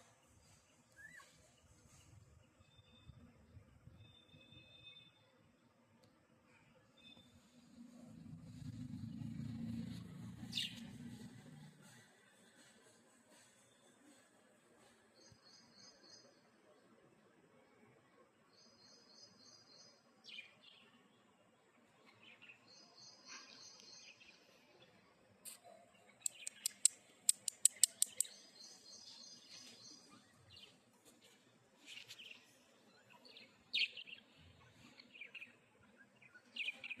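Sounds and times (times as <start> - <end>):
lovebirds chirping: 25.6 - 37.0.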